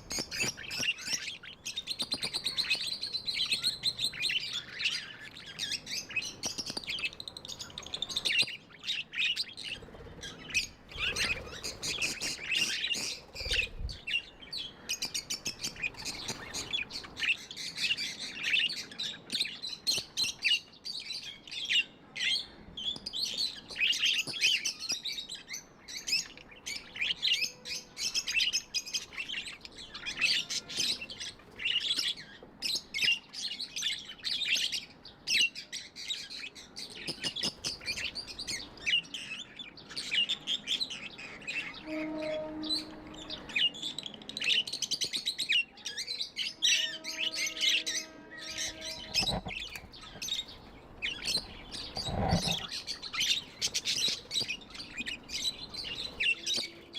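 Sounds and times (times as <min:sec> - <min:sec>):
budgerigars chirping: 0:00.0 - 0:19.6, 0:48.4 - 0:56.6.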